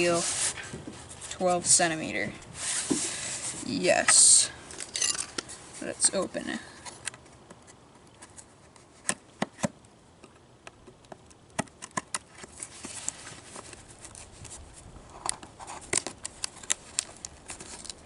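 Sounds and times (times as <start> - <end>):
packaging crinkling: 15.3 - 18.0.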